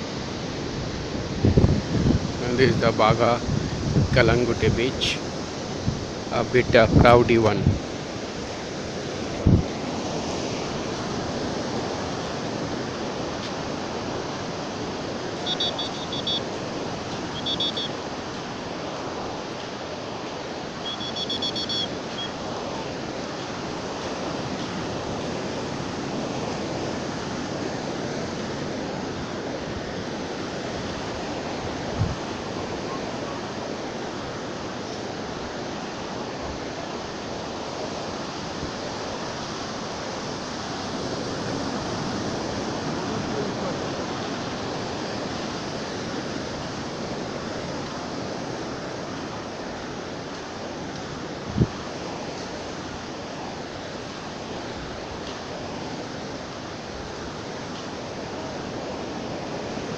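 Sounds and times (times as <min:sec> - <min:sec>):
wind buffeting microphone: 0:00.0 - 0:21.0, 0:21.9 - 0:35.6, 0:40.4 - 0:59.9
surf washing onto beach: 0:00.0 - 0:59.9
short high-pitched chirp: 0:20.9 - 0:22.3.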